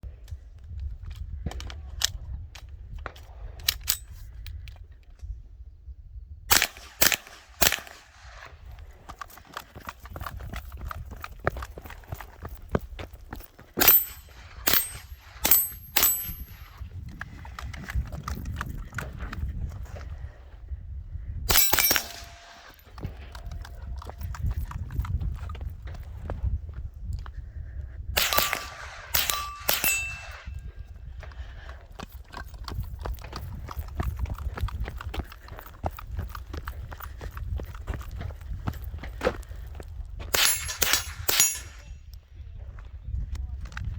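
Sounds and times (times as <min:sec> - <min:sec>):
rifle shots: 0:06.5 - 0:08.7, 0:13.8 - 0:16.6, 0:21.5 - 0:22.9, 0:28.2 - 0:30.5, 0:40.3 - 0:41.9
running footsteps: 0:08.6 - 0:20.4, 0:30.5 - 0:40.3
metallic ring of steel target: 0:13.8 - 0:16.8, 0:21.5 - 0:22.8, 0:28.2 - 0:30.7, 0:40.3 - 0:42.0.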